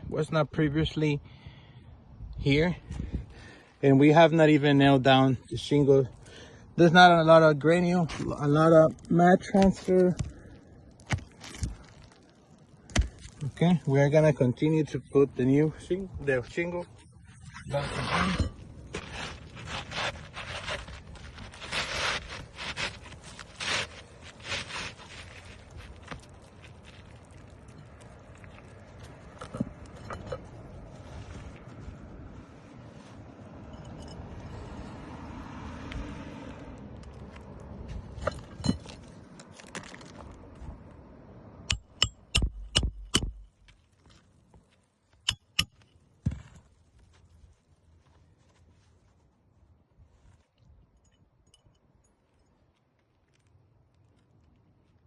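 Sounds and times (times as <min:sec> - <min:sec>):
roof shingle scraping: 0:17.2 - 0:27.7.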